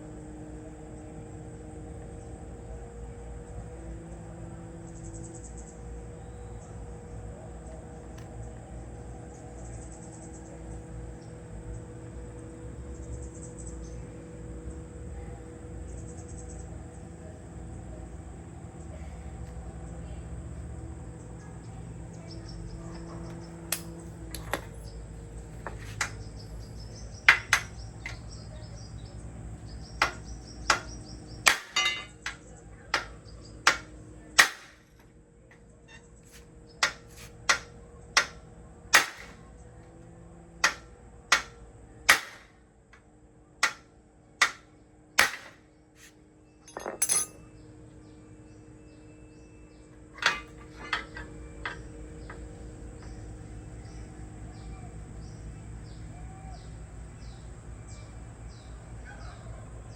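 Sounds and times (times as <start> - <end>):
hammer striking metal: 31.5 - 32.4, 45.2 - 45.6, 46.7 - 47.4, 50.2 - 51.8.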